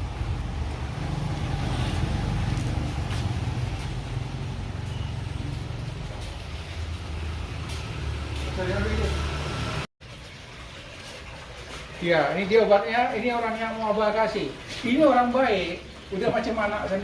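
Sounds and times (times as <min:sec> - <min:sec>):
vehicle engine and road rumble: 0:00.0 - 0:12.0.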